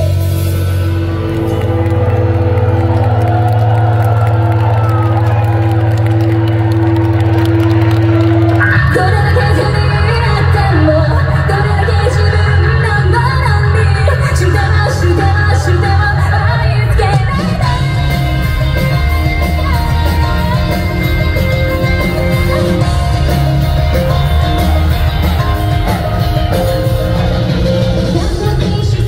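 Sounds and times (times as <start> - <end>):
live rock band playing: 0.0 - 29.0
woman singing: 8.6 - 26.8, 27.8 - 29.0.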